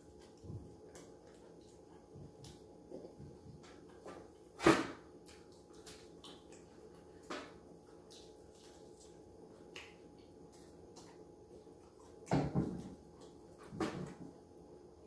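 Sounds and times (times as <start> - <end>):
chewing and mouth clicks: 0.0 - 4.0, 5.2 - 12.3.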